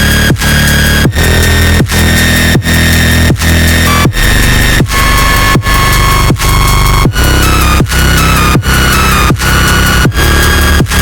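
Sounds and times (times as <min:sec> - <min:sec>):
dubstep electronic music: 0:00.0 - 0:11.0.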